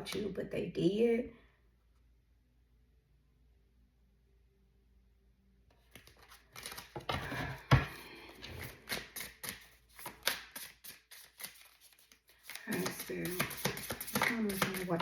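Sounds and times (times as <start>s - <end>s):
cards being shuffled: 5.8s - 15.0s.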